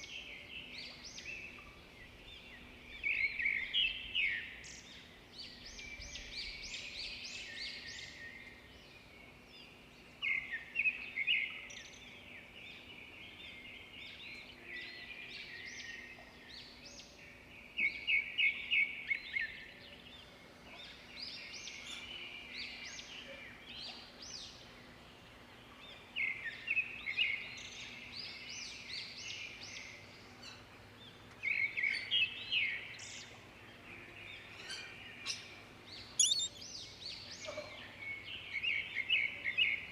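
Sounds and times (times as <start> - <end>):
songbirds chirping and singing: 0.0 - 39.9.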